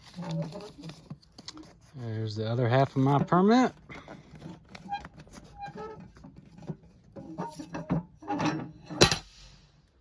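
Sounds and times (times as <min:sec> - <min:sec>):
paper rubbing and scraping: 0:00.0 - 0:07.6.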